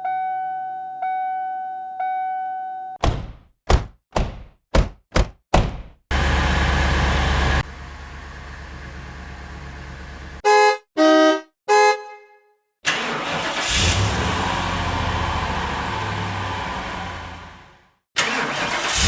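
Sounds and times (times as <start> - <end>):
car engine running: 6.1 - 10.4
car engine starting: 6.1 - 10.4, 12.9 - 19.0
car horn honking: 10.4 - 12.6.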